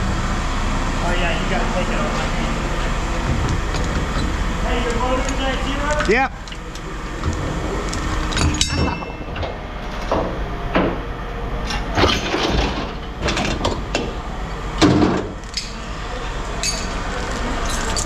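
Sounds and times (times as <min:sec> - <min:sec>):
steady low hum: 0:00.0 - 0:18.0
scrap metal clanking: 0:03.0 - 0:14.2, 0:14.8 - 0:18.0.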